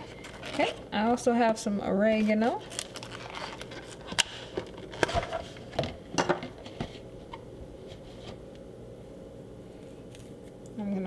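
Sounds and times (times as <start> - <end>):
herbs and packaging rustling: 0.0 - 7.0
faint steady hum: 0.0 - 11.0.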